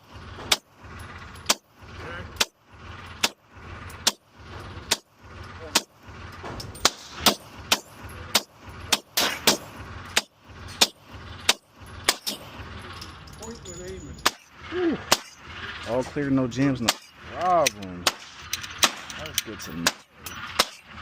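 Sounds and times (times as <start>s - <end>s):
pistol shots: 6.8s - 12.5s, 15.1s - 15.4s, 18.0s - 19.2s, 19.8s - 20.9s.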